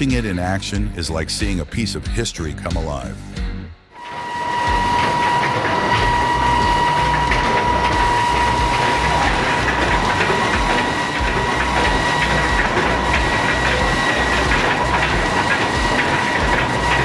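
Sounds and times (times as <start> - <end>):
excavator chain and buckets clattering: 4.0 - 17.0
high squeal: 4.0 - 17.0
low mechanical rumble: 4.5 - 17.0.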